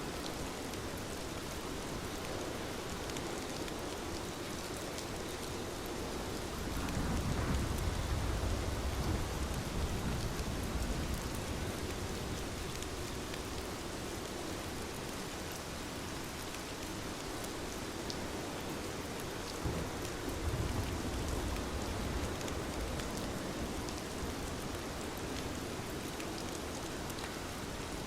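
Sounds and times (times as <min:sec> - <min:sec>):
steady rainfall: 0:00.0 - 0:28.0
thunder rolling: 0:19.6 - 0:23.0.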